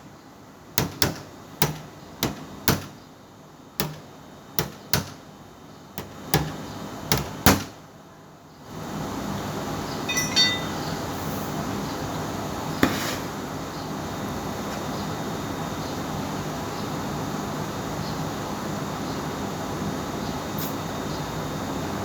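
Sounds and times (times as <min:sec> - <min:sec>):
sharp knock: 0:00.8 - 0:03.0, 0:03.8 - 0:05.2, 0:06.0 - 0:07.8.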